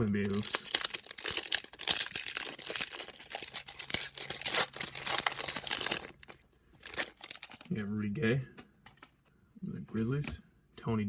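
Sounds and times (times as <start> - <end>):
wrapper tearing and crinkling: 0.0 - 7.7.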